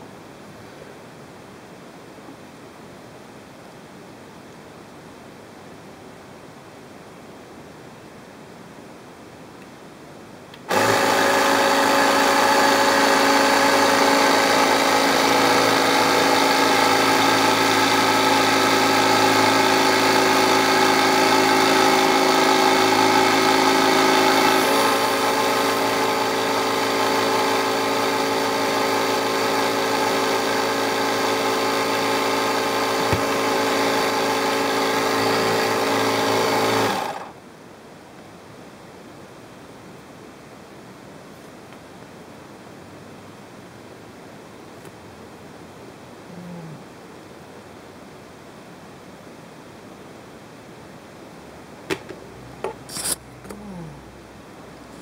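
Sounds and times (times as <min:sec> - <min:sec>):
motor-driven machine running: 0:10.7 - 0:37.3.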